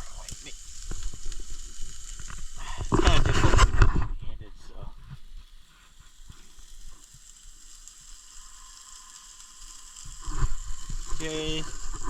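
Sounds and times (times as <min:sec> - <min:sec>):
patty sizzling in a frying pan: 0:00.0 - 0:12.0.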